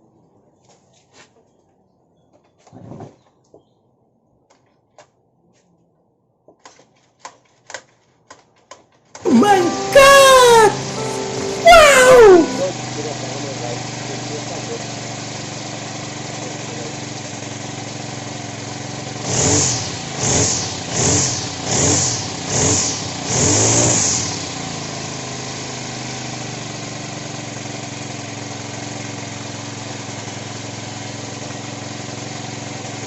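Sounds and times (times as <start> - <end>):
brush cutter engine idling and revving: 12.9 - 33.0.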